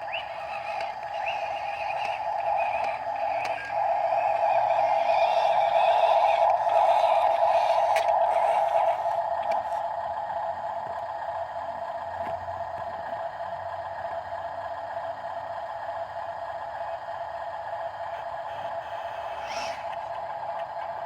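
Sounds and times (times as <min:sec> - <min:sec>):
small electric motor whirring: 0:00.0 - 0:09.9, 0:18.5 - 0:20.1.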